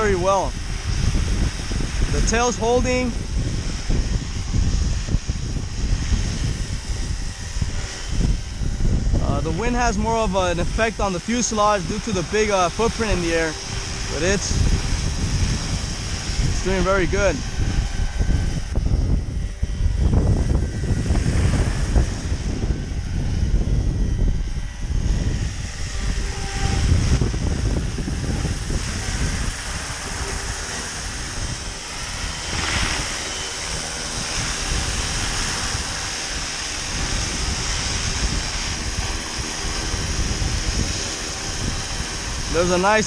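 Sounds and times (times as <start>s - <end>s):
rc helicopter high whine: 0.0s - 43.0s
wind buffeting microphone: 0.0s - 43.0s.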